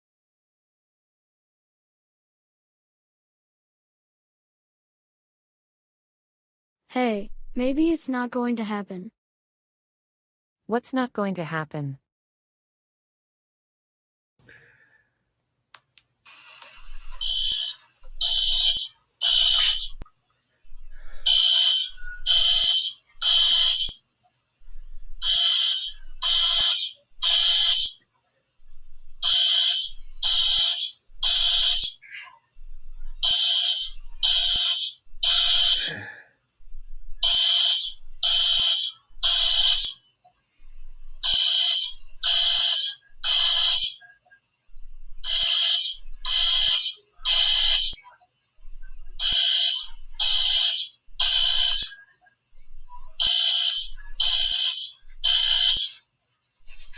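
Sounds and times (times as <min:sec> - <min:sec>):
fire alarm blasts: 0:16.8 - 0:20.0, 0:21.0 - 0:24.0, 0:25.2 - 0:28.0, 0:29.2 - 0:32.0, 0:33.2 - 0:36.0, 0:37.2 - 0:40.0, 0:41.2 - 0:44.0, 0:45.2 - 0:48.0, 0:49.2 - 0:52.0, 0:53.2 - 0:56.0.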